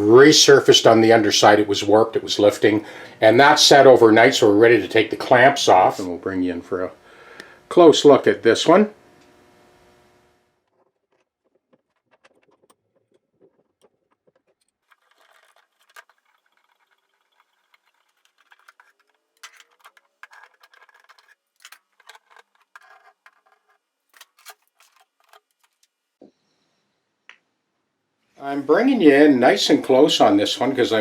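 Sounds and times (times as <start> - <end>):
clamps clicking and rattling: 10.7 - 25.9.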